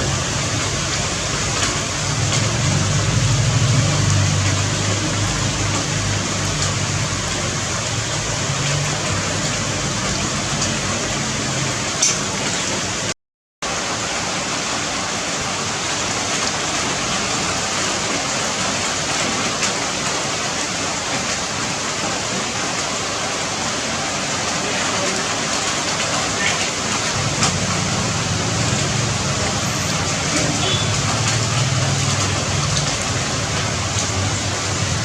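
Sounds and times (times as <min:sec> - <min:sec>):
rushing hiss of water: 0:00.0 - 0:35.0.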